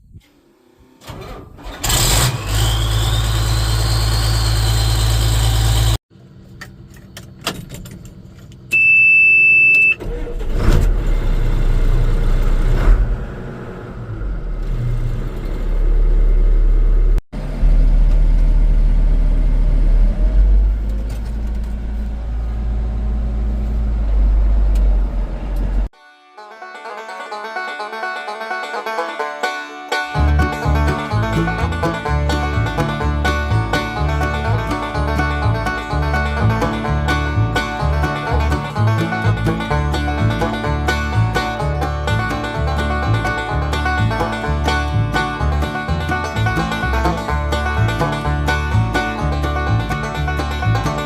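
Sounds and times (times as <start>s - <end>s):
diesel engines starting and running: 0.0s - 25.9s, 30.0s - 51.0s
engine whine spooling up: 1.8s - 6.0s
electronic warning beep: 8.7s - 10.0s.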